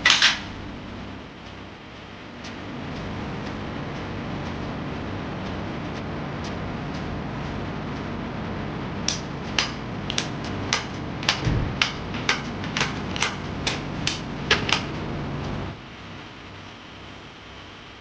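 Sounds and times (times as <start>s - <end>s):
steady low hum: 0.0s - 18.0s
sharp clicks or taps: 9.1s - 14.9s.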